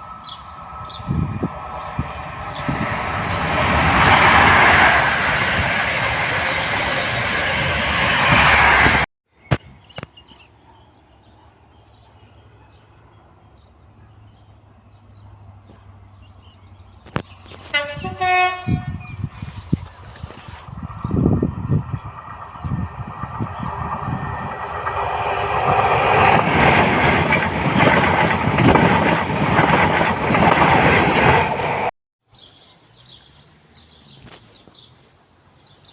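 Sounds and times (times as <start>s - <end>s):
train passing rumble: 0.0s - 9.1s, 12.4s - 31.9s
train horn blast: 17.6s - 19.2s.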